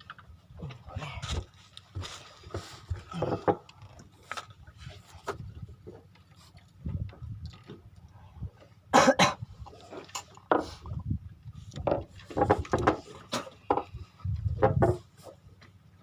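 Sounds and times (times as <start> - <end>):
person coughing: 8.9 - 9.4.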